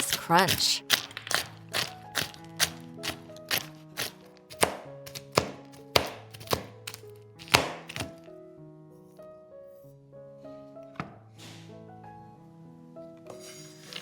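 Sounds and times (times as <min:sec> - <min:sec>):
knife chopping nuts on cutting board: 0:00.0 - 0:08.3.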